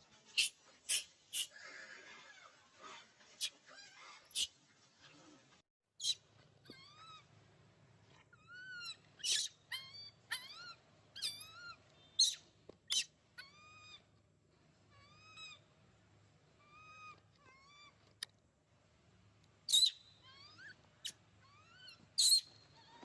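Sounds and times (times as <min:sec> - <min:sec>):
baby monkey crying: 0:06.0 - 0:07.3, 0:08.3 - 0:14.1, 0:14.9 - 0:15.6, 0:16.6 - 0:18.0, 0:19.7 - 0:23.0.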